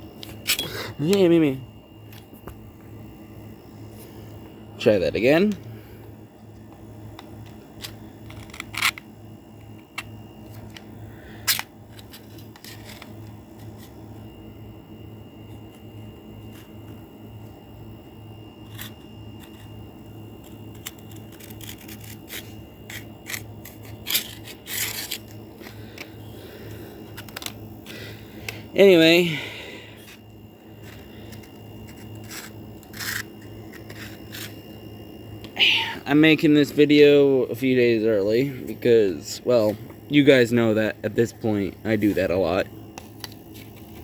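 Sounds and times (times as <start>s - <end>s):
steady low hum: 0.0s - 44.0s
blade scraping through sharpener: 20.7s - 25.4s, 30.8s - 34.6s.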